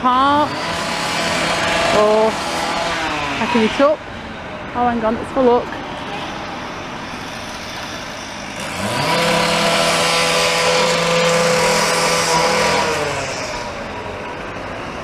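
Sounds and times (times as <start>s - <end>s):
motorised cutting tool running: 0.2s - 4.0s, 7.1s - 14.2s.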